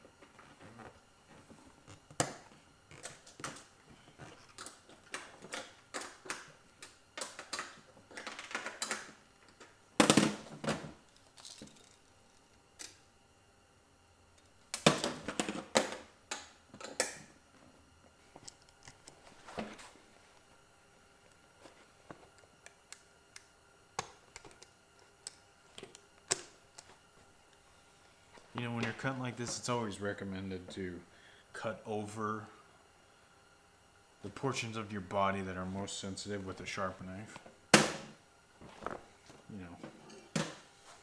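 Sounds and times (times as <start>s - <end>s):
small metal parts clicking and knocking: 11.1s - 12.1s.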